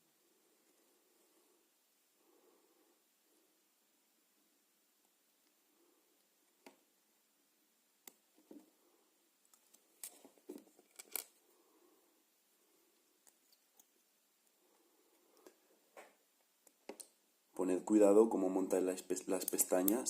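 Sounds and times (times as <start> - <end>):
small metal parts clicking: 10.9 - 11.3.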